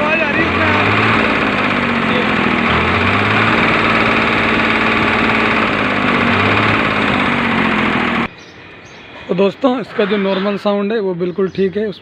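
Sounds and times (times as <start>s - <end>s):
diesel tractor engine revving: 0.0s - 8.3s
engine knocking: 0.0s - 8.3s.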